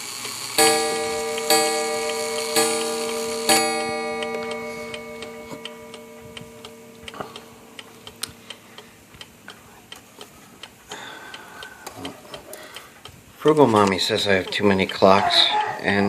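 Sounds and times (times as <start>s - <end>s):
mantel clock striking: 0.0s - 9.3s, 13.5s - 16.0s
clock escapement ticking: 0.0s - 16.0s.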